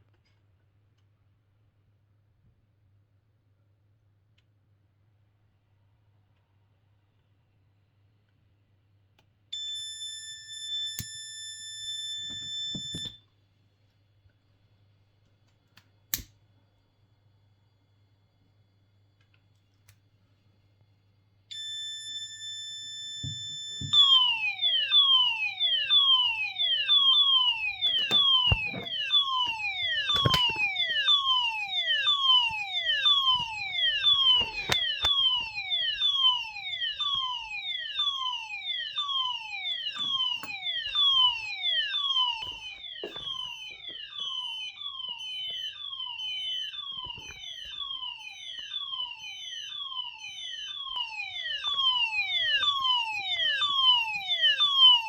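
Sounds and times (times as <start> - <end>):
smoke alarm siren: 9.6 - 13.3, 21.5 - 55.0.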